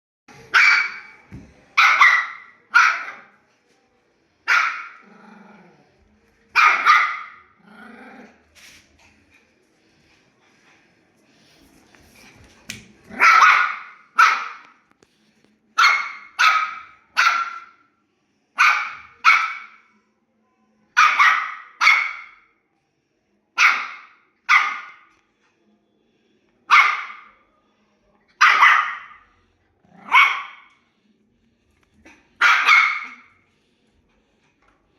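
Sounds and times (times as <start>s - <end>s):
dog barking: 0.5s - 1.2s, 1.8s - 3.4s, 4.5s - 5.0s, 6.6s - 7.5s, 13.1s - 14.7s, 15.8s - 17.8s, 18.6s - 19.8s, 21.0s - 22.5s, 23.6s - 25.1s, 26.7s - 27.3s, 28.4s - 29.2s, 30.0s - 30.8s, 32.4s - 33.4s.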